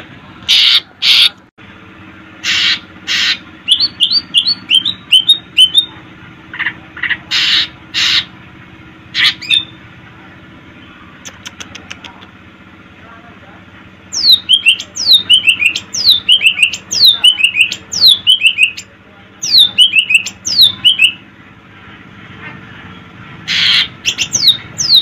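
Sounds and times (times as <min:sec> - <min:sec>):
bird singing harsh notes: 0:02.4 - 0:06.0, 0:14.1 - 0:21.2, 0:23.5 - 0:25.0.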